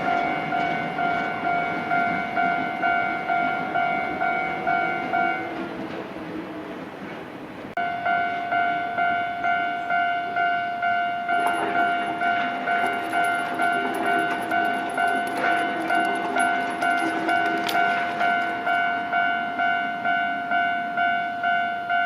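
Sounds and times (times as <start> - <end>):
lower ringing tone: 0.0 - 5.6, 7.8 - 22.0
level-crossing warning bell ringing: 0.0 - 5.9, 7.8 - 22.0
fast clicking rattle: 11.4 - 18.7.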